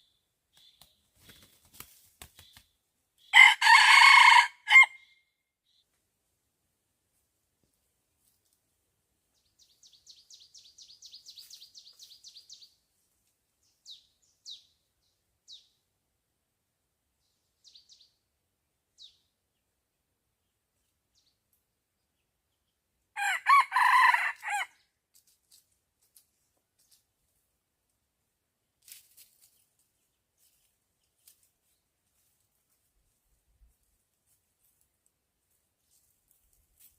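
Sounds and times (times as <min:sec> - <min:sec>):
rooster crowing: 0:03.3 - 0:05.0, 0:23.2 - 0:24.7.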